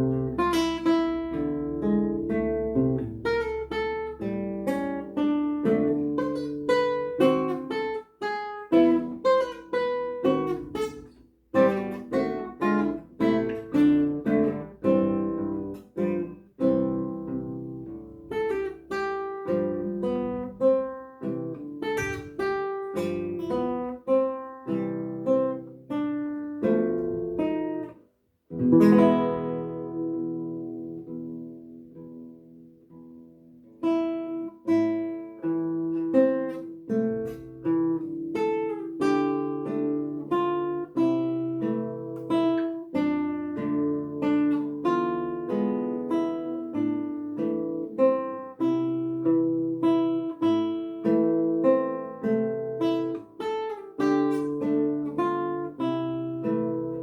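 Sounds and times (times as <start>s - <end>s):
classical guitar playing: 0.0s - 57.0s.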